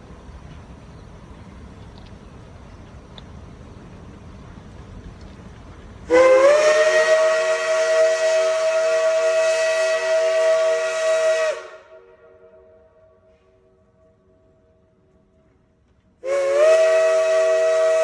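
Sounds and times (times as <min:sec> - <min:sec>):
steam locomotive whistle blast: 0:06.1 - 0:13.9, 0:16.2 - 0:18.0.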